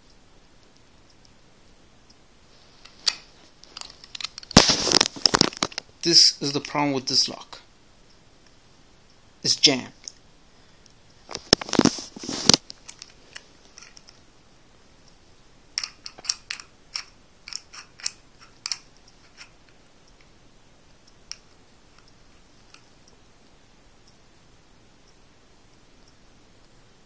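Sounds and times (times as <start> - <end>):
padlock clicking and rattling: 3.8 - 4.6, 15.8 - 19.6.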